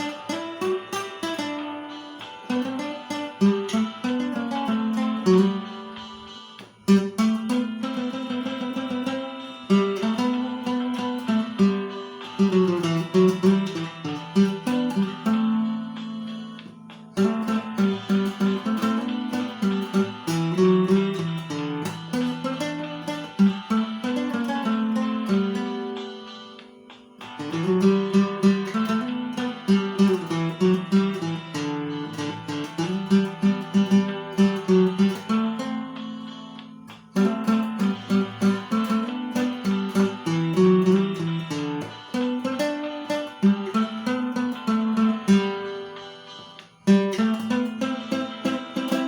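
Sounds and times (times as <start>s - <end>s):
acoustic guitar hymn melody: 0.0s - 49.0s.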